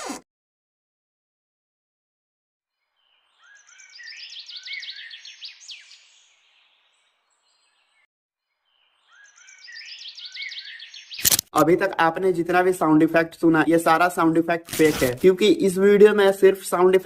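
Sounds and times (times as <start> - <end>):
songbirds chirping and whistling: 2.8 - 11.4.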